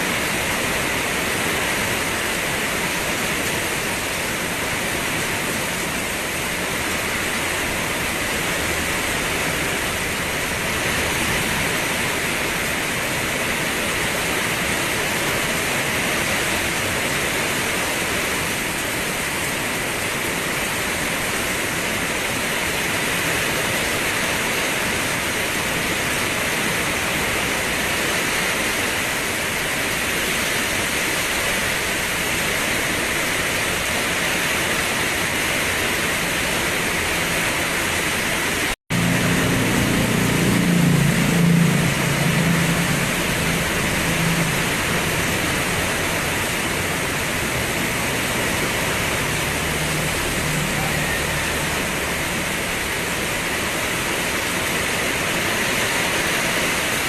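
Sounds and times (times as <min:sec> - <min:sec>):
steady dense rain: 0:00.0 - 0:57.0.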